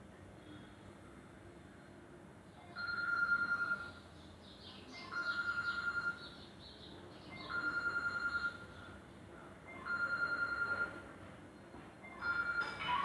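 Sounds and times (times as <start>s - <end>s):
trilling electronic phone ringtone: 2.8s - 3.9s, 5.1s - 6.2s, 7.5s - 8.6s, 9.8s - 11.0s, 12.2s - 13.0s.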